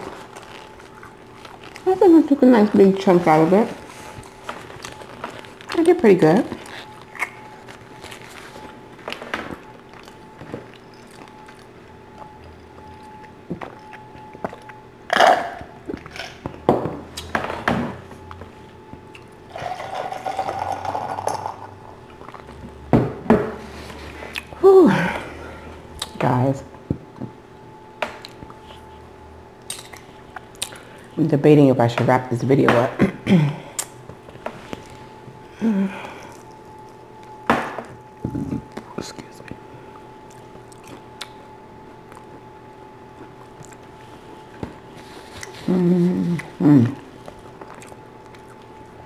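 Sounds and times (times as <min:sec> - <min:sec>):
person humming: 0:24.6 - 0:25.3, 0:35.5 - 0:36.3, 0:38.2 - 0:38.7, 0:45.6 - 0:47.1.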